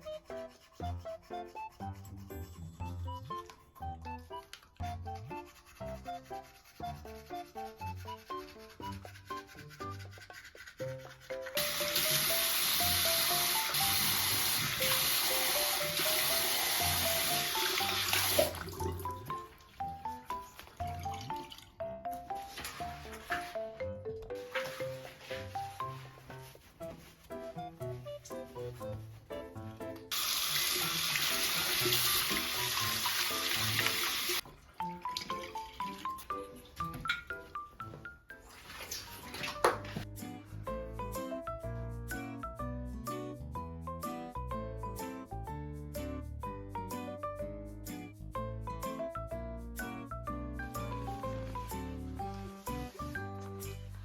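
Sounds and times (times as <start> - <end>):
background music plucked melody: 0.0 - 54.0
running water pouring: 11.6 - 19.8, 30.1 - 36.9.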